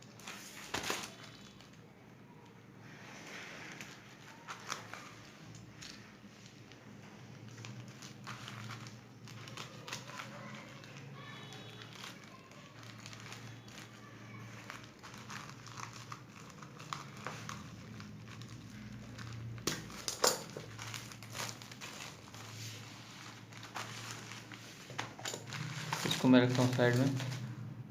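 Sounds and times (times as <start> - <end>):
packaging crinkling and rustling: 0.0 - 27.7
packaging clicks: 3.8 - 22.6.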